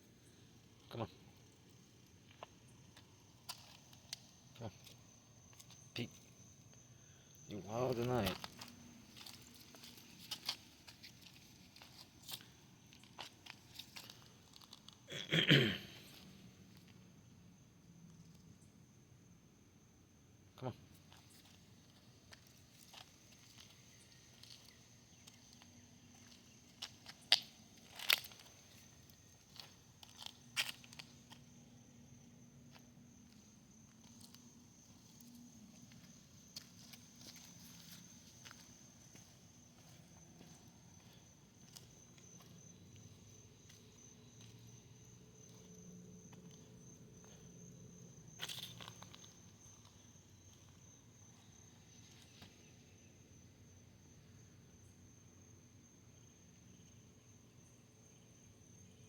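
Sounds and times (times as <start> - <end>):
footsteps crunching on ground: 2.2 - 6.8, 7.9 - 15.0, 21.0 - 31.9, 32.6 - 52.6
soft steps or ticks: 2.2 - 6.8, 7.9 - 15.0, 20.9 - 31.5, 32.7 - 44.7.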